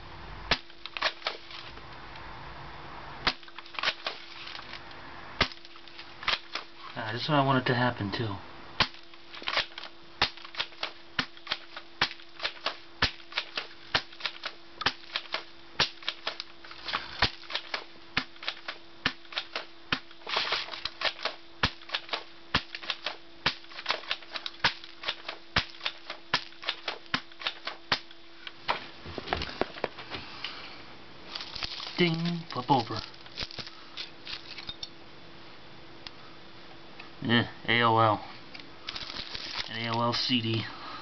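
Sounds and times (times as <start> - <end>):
faint steady hum: 0.0 - 41.0
airsoft gun shots: 0.5 - 1.4, 8.8 - 16.4, 17.2 - 28.1
pellets hitting plastic case: 8.8 - 28.1, 31.3 - 34.6, 38.9 - 40.0.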